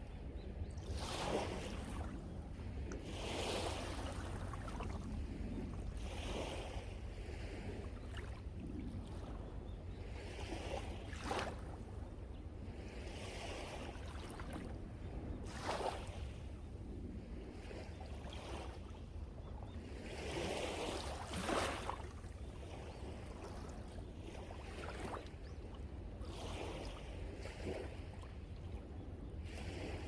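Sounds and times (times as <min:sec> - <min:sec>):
wind rumble on microphone: 0:00.0 - 0:30.0
sea waves breaking on shore: 0:00.8 - 0:09.4, 0:10.1 - 0:19.1, 0:19.9 - 0:25.4, 0:26.1 - 0:28.2, 0:29.4 - 0:30.0.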